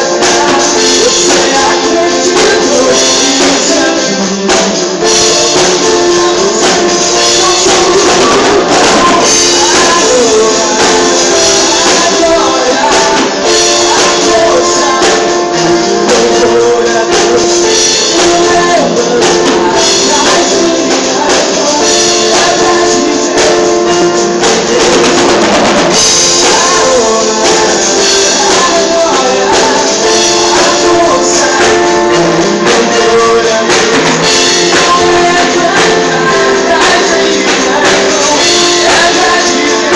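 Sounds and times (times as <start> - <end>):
jingling percussion rhythm: 0.0 - 39.9.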